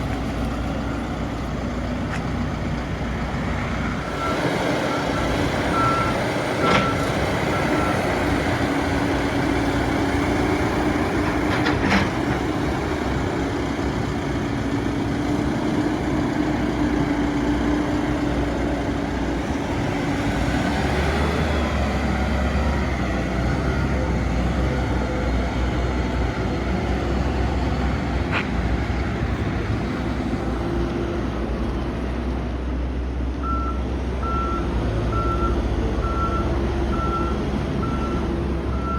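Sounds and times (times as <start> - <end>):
diesel engine under load: 0.0 - 38.9
reversing alarm beeping: 3.8 - 8.2, 33.4 - 38.9.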